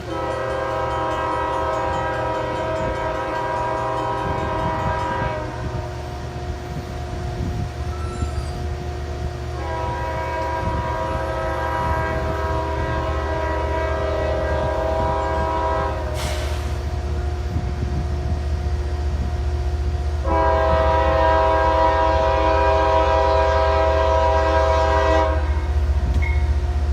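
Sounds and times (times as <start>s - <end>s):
locomotive air horn blasts: 0.0s - 6.1s, 9.4s - 17.0s, 20.2s - 25.8s
short air hiss: 16.1s - 17.0s.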